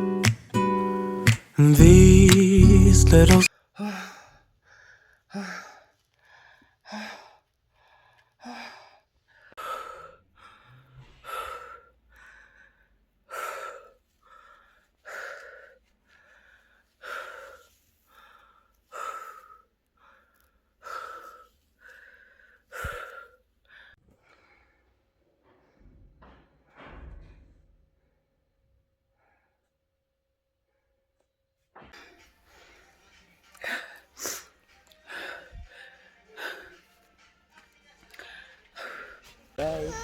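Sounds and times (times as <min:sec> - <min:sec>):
person breathing heavily: 0:03.6 - 0:24.6, 0:33.6 - 0:36.9.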